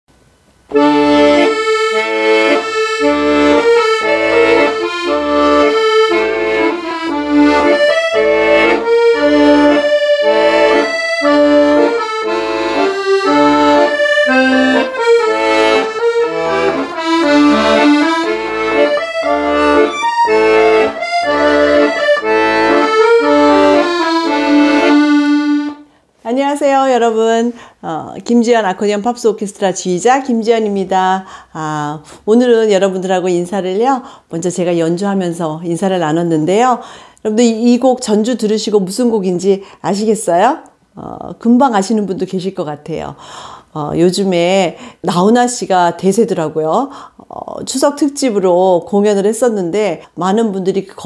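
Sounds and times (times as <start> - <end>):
solo accordion: 0.7 - 25.9.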